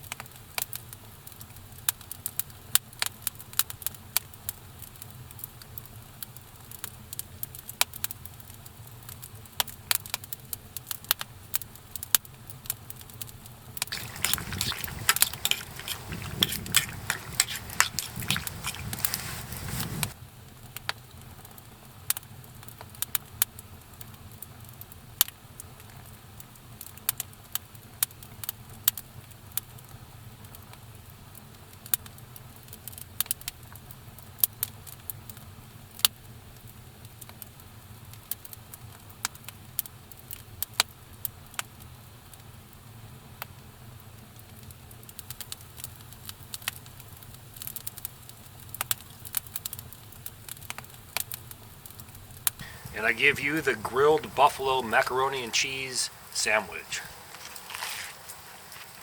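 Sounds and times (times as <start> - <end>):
sandwich sizzling in a pan: 13.8 - 20.2, 44.7 - 59.0
handling noise: 13.9 - 20.2.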